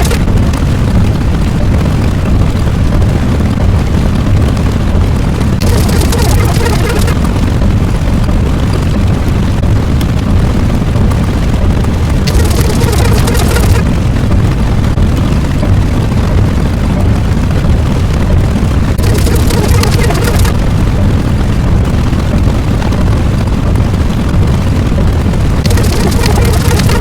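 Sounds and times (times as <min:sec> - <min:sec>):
loud steady rumble: 0:00.0 - 0:27.0.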